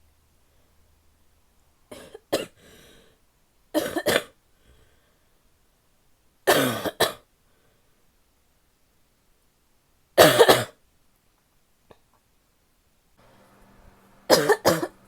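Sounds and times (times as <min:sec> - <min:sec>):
woman coughing: 0:01.9 - 0:02.6, 0:03.8 - 0:04.4, 0:06.5 - 0:07.2, 0:10.2 - 0:10.8, 0:14.3 - 0:15.0.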